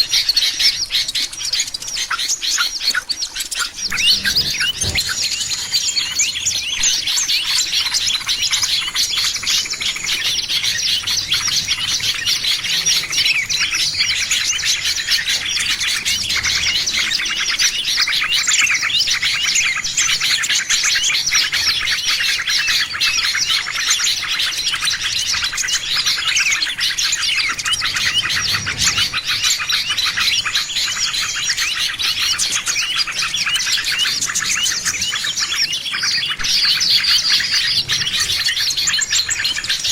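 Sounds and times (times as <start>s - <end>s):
small birds chirping chorus: 0.0s - 39.9s.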